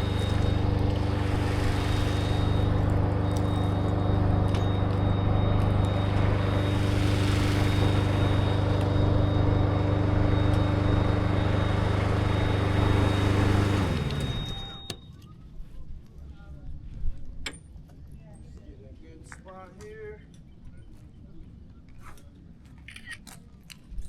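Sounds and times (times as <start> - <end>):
heavy equipment engine drone: 0.0 - 15.0
faint high whine: 0.0 - 15.5.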